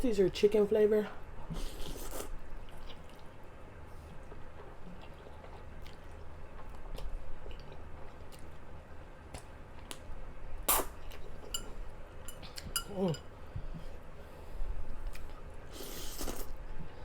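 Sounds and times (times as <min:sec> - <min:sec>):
chewing noodles: 0:01.5 - 0:10.1, 0:15.0 - 0:17.0.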